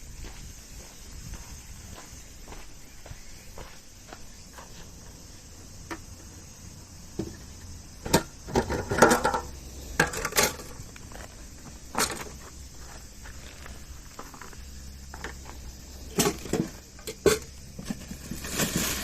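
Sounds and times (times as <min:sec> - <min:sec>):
hard objects knocking and clattering: 0:08.1 - 0:10.7.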